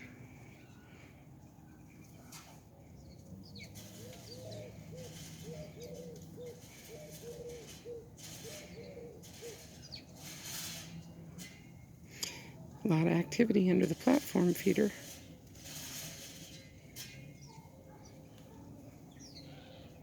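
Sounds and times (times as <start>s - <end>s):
small birds chirping: 0.0s - 20.0s
dove cooing: 3.8s - 10.6s.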